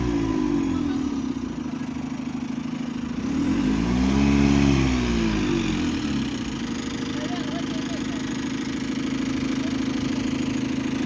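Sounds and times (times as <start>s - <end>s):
bus engine revving: 3.0s - 7.0s.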